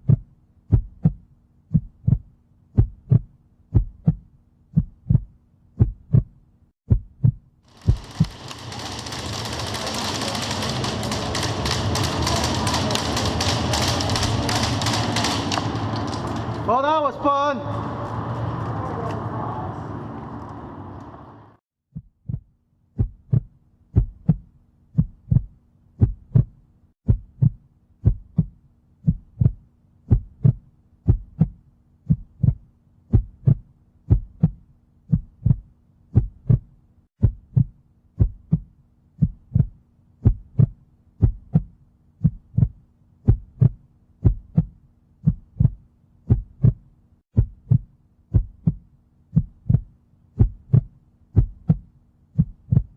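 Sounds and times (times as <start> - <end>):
heartbeat thumps: 0.0 - 8.1, 21.9 - 52.9
noisy field sound: 7.7 - 21.6.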